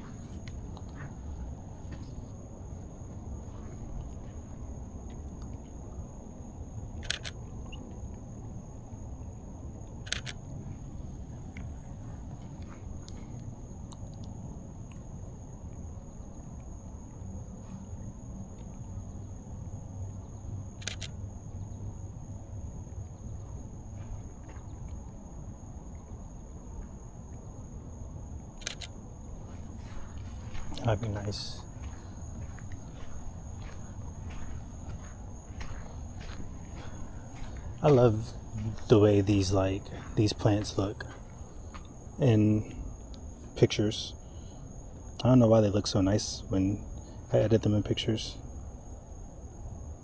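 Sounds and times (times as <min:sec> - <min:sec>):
camera shutter clicking: 0:07.0 - 0:07.4, 0:10.0 - 0:10.4, 0:28.6 - 0:29.0
steady low rumble: 0:25.9 - 0:48.6.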